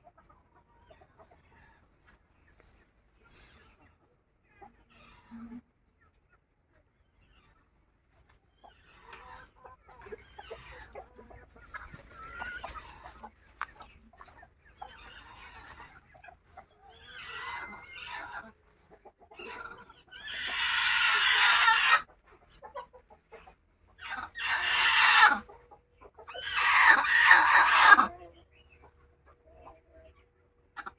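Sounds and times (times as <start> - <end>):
chickens clucking: 0.0 - 30.9
loud long chicken calls: 8.6 - 22.1, 23.9 - 28.3.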